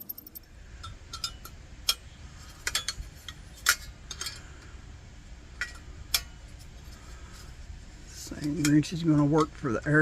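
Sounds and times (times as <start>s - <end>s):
metallic clicks and clinks: 0.0s - 2.0s.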